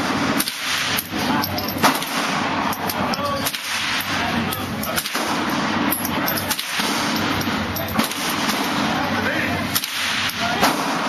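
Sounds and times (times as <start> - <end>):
gunshots: 0.0 - 1.1, 1.8 - 2.7, 6.5 - 9.0, 9.7 - 11.0
shooting range noise: 0.0 - 11.0.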